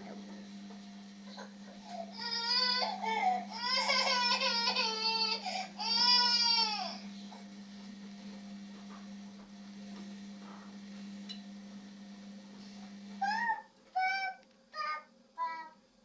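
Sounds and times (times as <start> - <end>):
steady low hum: 0.0 - 16.0
young child crying: 2.0 - 7.0, 13.2 - 15.7.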